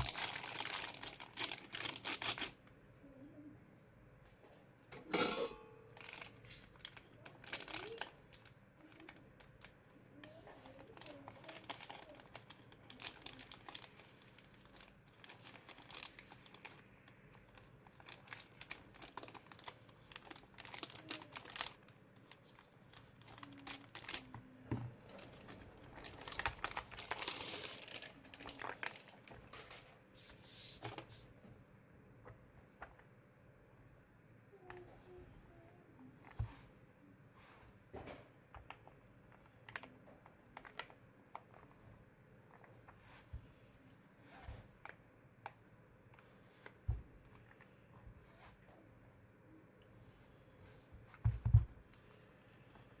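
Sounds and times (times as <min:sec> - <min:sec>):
plastic packaging crinkling: 0:00.0 - 0:02.7, 0:05.9 - 0:31.2, 0:39.6 - 0:41.7.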